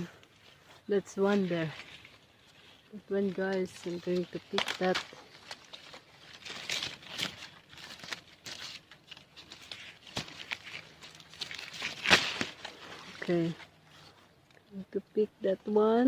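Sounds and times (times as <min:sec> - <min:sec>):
leaves and twigs rustling: 0:00.0 - 0:16.0
twig snapping: 0:03.3 - 0:13.7.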